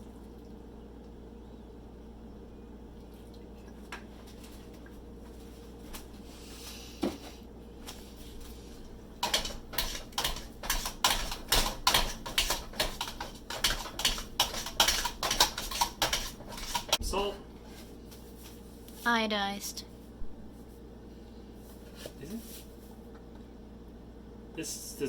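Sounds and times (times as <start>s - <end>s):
steady low hum: 0.0s - 25.0s
utensil clattering against a pot: 9.2s - 17.0s.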